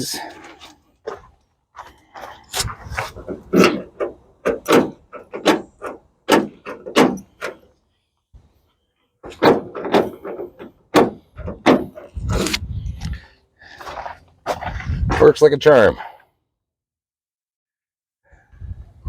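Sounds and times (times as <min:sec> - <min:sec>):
door lock clunking and clicking: 0:03.2 - 0:07.7, 0:09.2 - 0:12.2.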